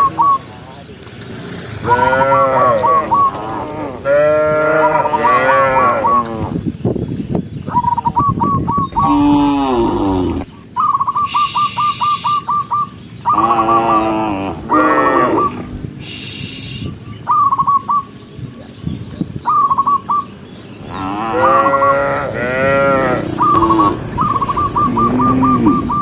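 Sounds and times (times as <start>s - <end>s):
cattle mooing: 1.8s - 6.6s, 8.9s - 10.5s, 13.3s - 15.7s, 20.9s - 26.0s.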